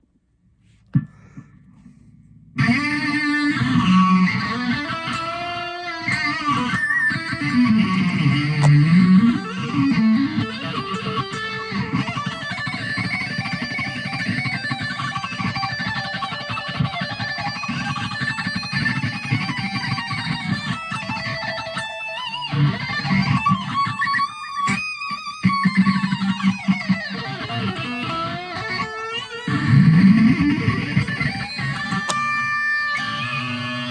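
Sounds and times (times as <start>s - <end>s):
electric guitar lead solo: 2.6s - 33.9s
click: 31.9s - 32.3s.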